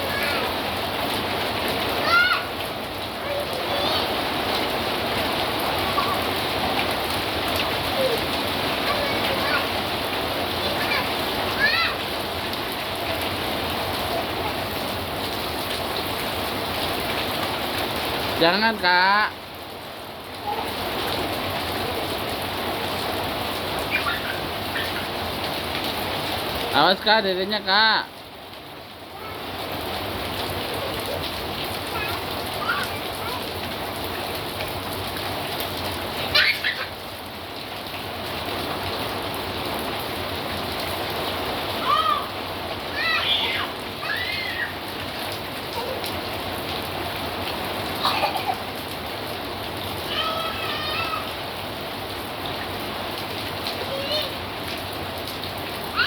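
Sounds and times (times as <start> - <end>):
heavy rain pouring: 0.0 - 56.0
high-pitched voice: 3.2 - 4.1, 23.9 - 25.1, 31.9 - 33.5, 50.1 - 51.3, 53.8 - 54.4.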